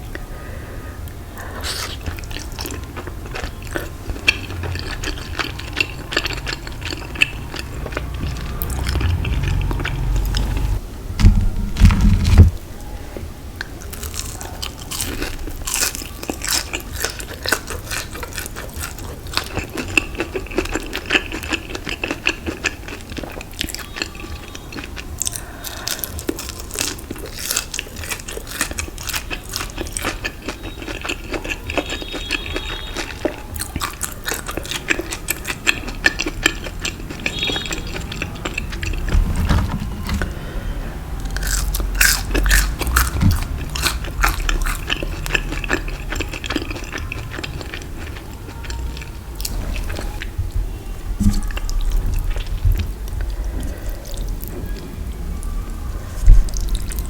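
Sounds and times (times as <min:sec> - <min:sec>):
person chewing and crunching: 0:01.4 - 0:10.8, 0:13.8 - 0:40.4, 0:41.2 - 0:50.3.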